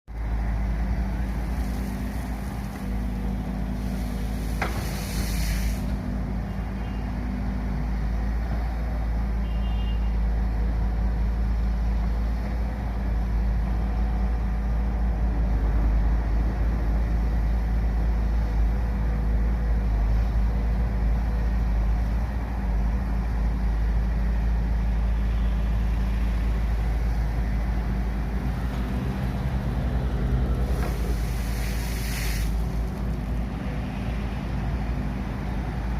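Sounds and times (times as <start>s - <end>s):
heavy machinery engine rumbling: 0.1s - 35.9s
short hiss: 3.8s - 6.0s, 30.7s - 32.8s.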